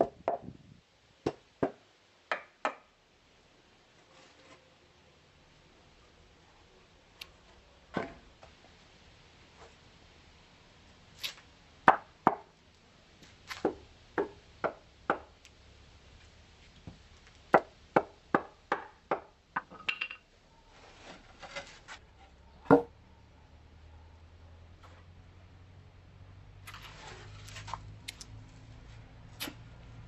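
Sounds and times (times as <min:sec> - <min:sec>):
scraping: 0:20.6 - 0:22.4.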